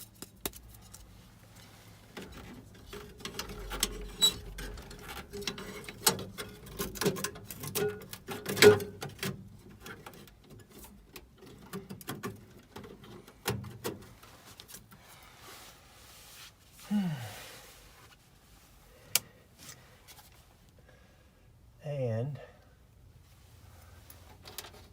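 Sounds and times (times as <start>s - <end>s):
hands handling metal lid and tools: 0.0s - 14.8s.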